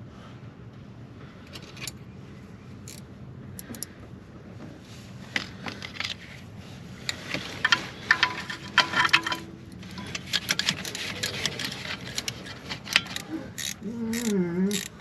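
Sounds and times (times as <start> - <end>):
steady low hum: 0.0 - 15.0
hand tools clinking on metal: 7.1 - 15.0.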